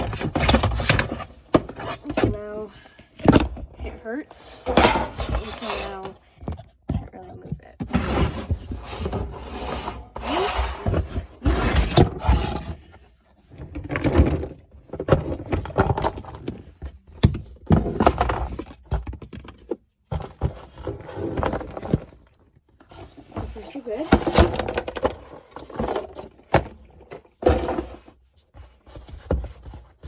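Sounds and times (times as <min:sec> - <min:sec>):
toys rustling: 0:00.0 - 0:13.1.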